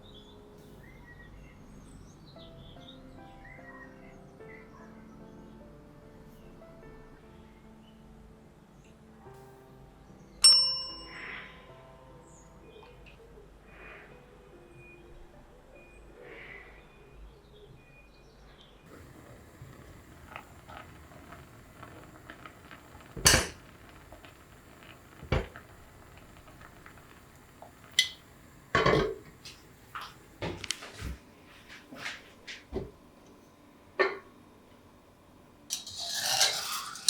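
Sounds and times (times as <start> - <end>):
dishes and utensils clinking: 18.9 - 31.1, 34.0 - 34.3, 35.7 - 37.0.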